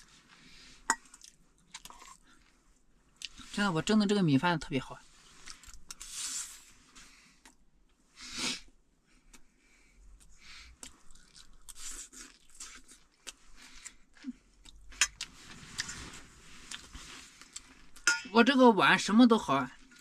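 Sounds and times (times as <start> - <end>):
person chewing: 0.9 - 2.4, 10.2 - 15.9, 16.6 - 18.0.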